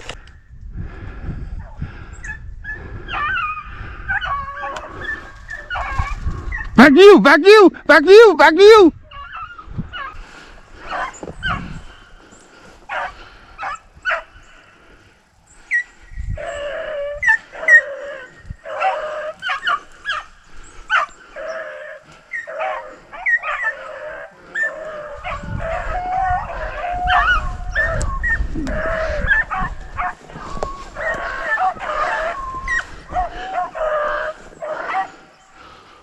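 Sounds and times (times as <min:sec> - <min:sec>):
dog yelps: 0:03.1 - 0:06.7, 0:09.1 - 0:10.2, 0:16.5 - 0:20.3, 0:22.3 - 0:35.2
dogs baying: 0:09.1 - 0:11.9, 0:12.9 - 0:14.4, 0:15.7 - 0:35.8.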